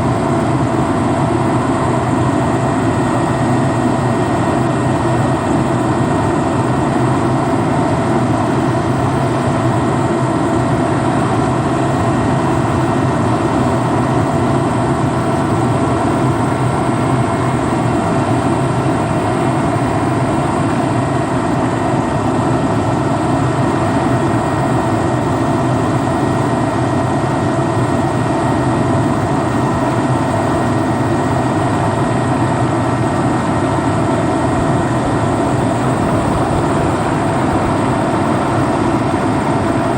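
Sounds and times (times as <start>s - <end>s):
vehicle engine drone: 31.6s - 39.9s.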